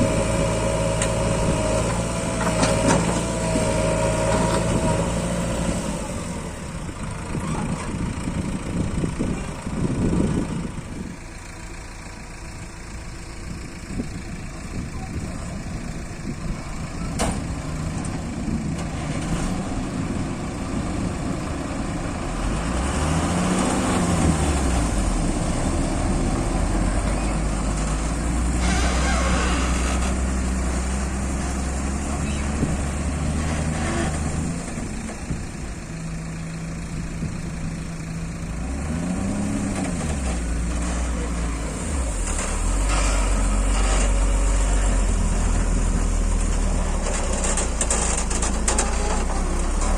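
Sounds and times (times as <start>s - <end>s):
diesel engine revving: 0.0s - 49.9s
heavy trucks running: 0.0s - 49.9s.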